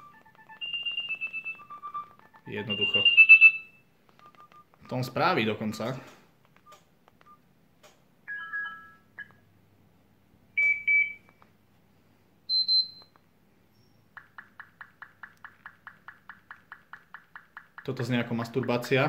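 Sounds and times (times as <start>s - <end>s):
fast run of beeps: 0.0s - 4.7s
phone electronic beep tones: 0.0s - 4.7s, 8.3s - 9.4s, 10.6s - 11.3s, 12.5s - 13.2s.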